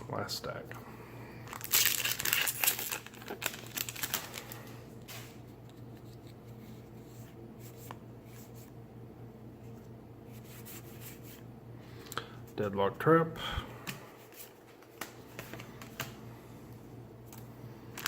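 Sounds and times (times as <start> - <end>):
steady low hum: 0.0 - 18.0
foil wrapper crinkling and tearing: 1.4 - 5.4.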